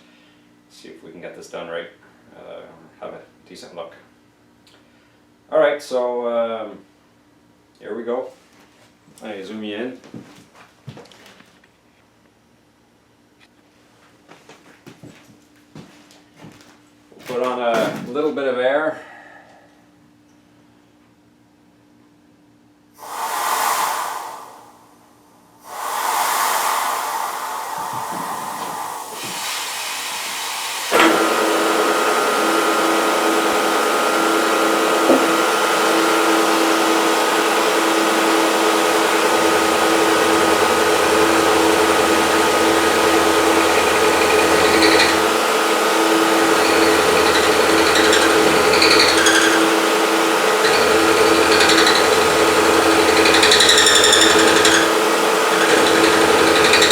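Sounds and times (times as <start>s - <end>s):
compressed air hissing: 23.0s - 56.9s
milling machine whining: 25.7s - 56.9s.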